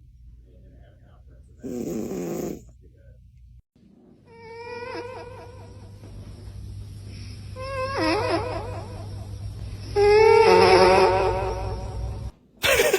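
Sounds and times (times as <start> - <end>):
cat snoring: 1.6 - 2.7.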